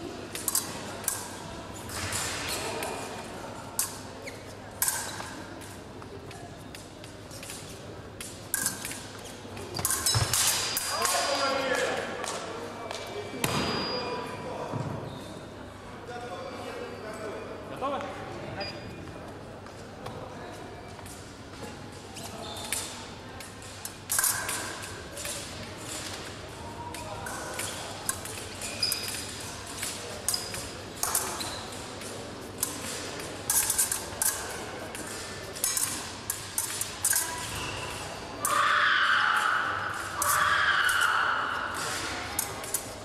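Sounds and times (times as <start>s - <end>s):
fencing blades clashing: 0.2s - 12.6s, 22.1s - 43.0s.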